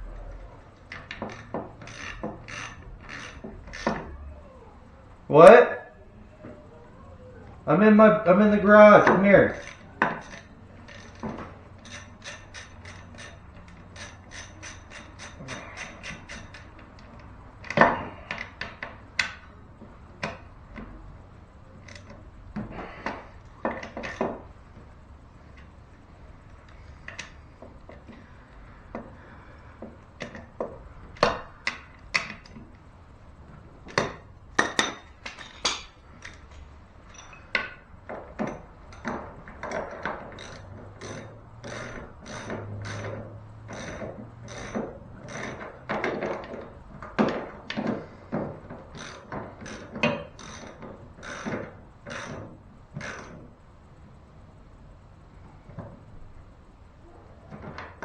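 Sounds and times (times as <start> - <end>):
ratchet wrench clicking: 0.9 - 4.0, 9.0 - 19.5, 38.9 - 45.7, 48.9 - 52.4
hand tools knocking on metal: 7.8 - 17.0.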